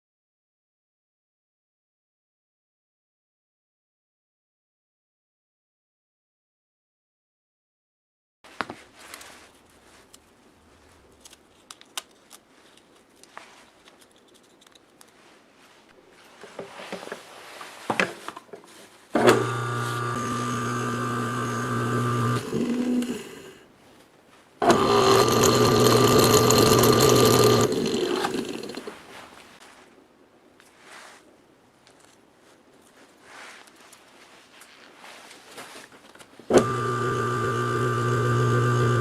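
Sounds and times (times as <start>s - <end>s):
electric motor humming: 19.2s - 23.6s, 24.6s - 28.9s, 36.5s - 39.0s.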